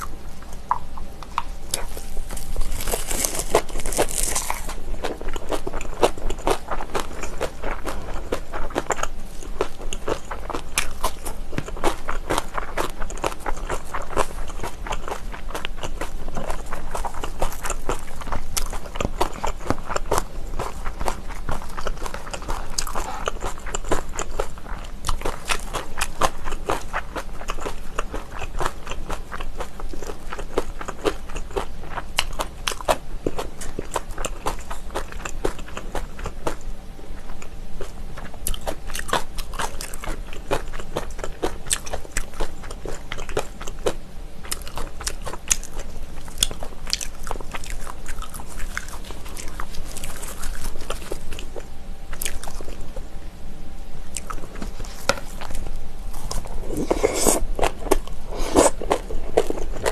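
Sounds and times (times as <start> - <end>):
person chewing crunchy food: 0.0 - 53.1, 54.1 - 59.9.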